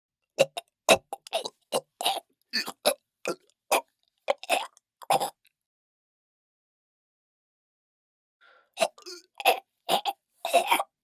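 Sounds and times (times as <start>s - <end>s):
man choking and gasping: 0.4s - 5.4s, 8.4s - 11.0s.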